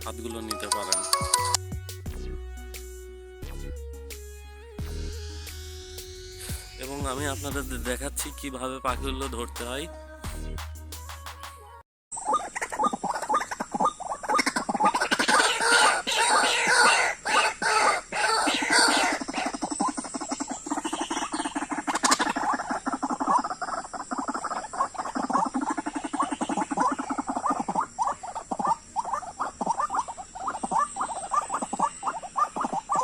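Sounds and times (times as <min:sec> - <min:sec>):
bird calling harsh grating notes: 0:05.0 - 0:07.4, 0:12.2 - 0:33.0.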